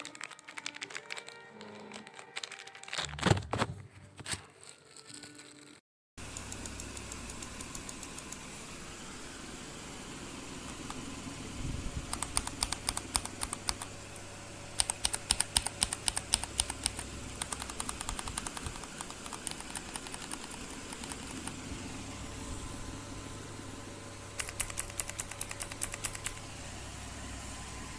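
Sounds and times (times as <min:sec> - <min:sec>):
mechanical keyboard typing: 0:00.0 - 0:03.0, 0:12.1 - 0:13.9, 0:14.8 - 0:21.7, 0:24.4 - 0:26.5
steady low hum: 0:06.2 - 0:27.9.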